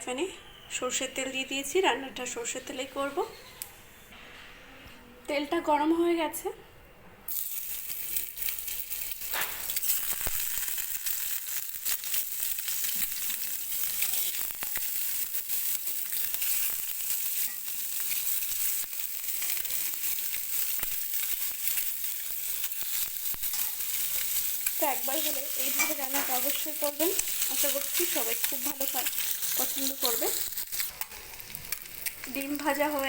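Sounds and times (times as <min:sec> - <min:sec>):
eggs sizzling in oil: 0:07.3 - 0:33.0.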